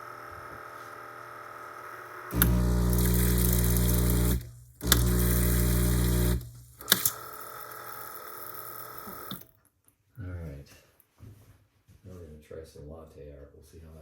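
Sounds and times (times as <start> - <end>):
espresso machine pump buzzing: 0.0 - 9.5
sharp clicks: 2.3 - 7.3.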